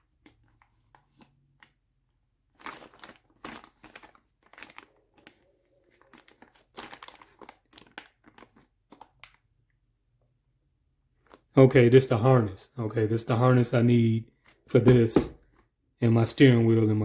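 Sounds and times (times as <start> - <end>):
packaging crinkling and rustling: 0.0 - 9.7.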